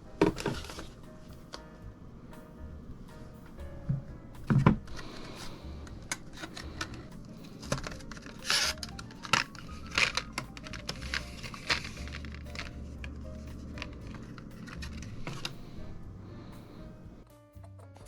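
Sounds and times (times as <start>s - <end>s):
heavy thump: 0.0s - 8.2s
packaging rustling: 0.1s - 1.6s, 4.5s - 16.0s.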